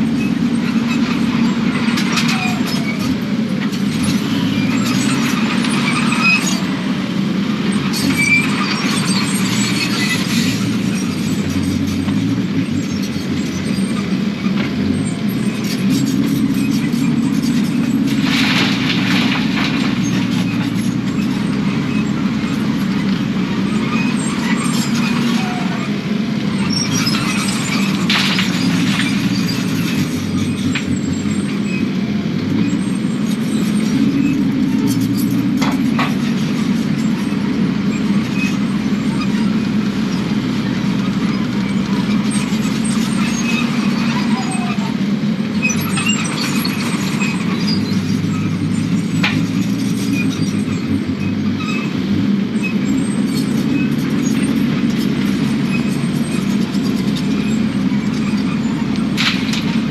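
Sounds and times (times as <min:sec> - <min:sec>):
excavator diesel engine running: 0:00.0 - 0:59.9
digging clanks and scrapes: 0:07.9 - 0:25.9, 0:26.5 - 0:31.8, 0:32.5 - 0:44.9, 0:45.6 - 0:52.0, 0:52.6 - 0:59.9.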